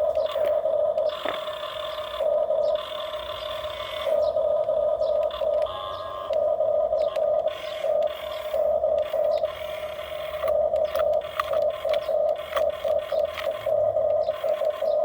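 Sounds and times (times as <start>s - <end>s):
small electric motors whining: 0.0s - 15.0s
plastic clicks and scrapes: 7.0s - 15.0s.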